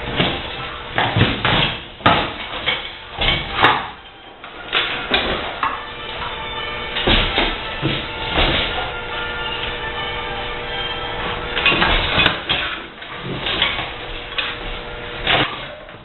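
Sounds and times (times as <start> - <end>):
dishwasher parts knocking and clattering: 0.0 - 6.4, 7.0 - 9.1, 11.3 - 14.6, 15.2 - 16.0.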